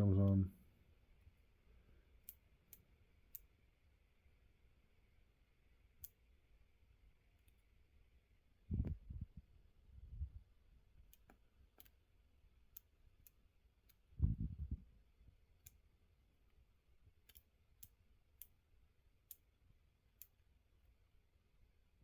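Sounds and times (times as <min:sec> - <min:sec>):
small switch clicks: 0:06.0 - 0:06.2, 0:11.1 - 0:12.0, 0:17.2 - 0:18.6
dull low bump: 0:14.2 - 0:14.8.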